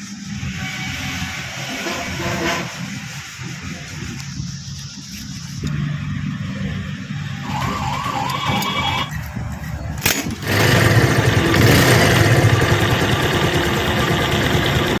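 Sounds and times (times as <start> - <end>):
motorcycle engine running: 1.9 - 15.0
warbling tone: 7.3 - 9.8.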